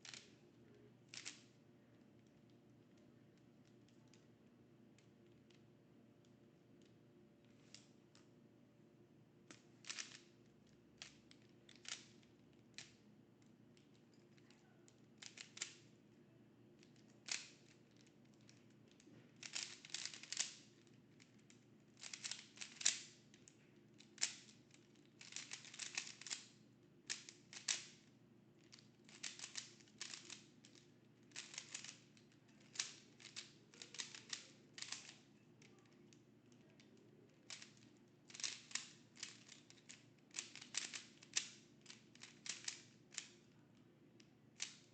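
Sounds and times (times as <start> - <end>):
speedcube clicking: 1.1 - 1.5, 9.5 - 13.0, 15.2 - 15.9, 16.8 - 28.0, 28.6 - 36.0, 36.6 - 43.4, 44.6 - 44.9.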